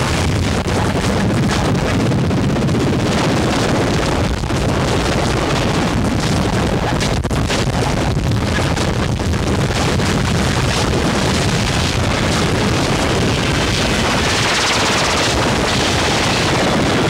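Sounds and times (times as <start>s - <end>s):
distorted rattling noise: 0.0s - 17.0s.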